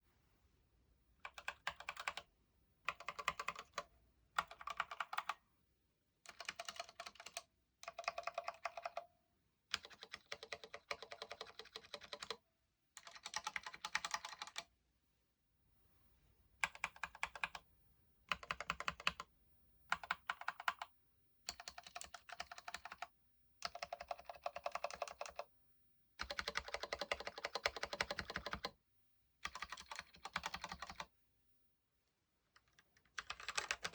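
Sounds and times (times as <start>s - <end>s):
mechanical keyboard clacks: 2.9s - 3.8s, 6.3s - 9.0s, 9.8s - 12.4s, 13.0s - 14.6s, 23.6s - 25.4s, 26.2s - 28.7s, 29.4s - 31.0s, 33.2s - 33.9s.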